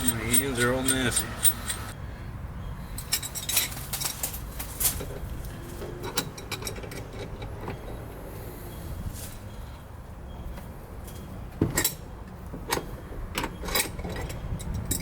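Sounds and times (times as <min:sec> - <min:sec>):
metal tool parts clinking: 0:00.0 - 0:02.0, 0:03.0 - 0:05.2.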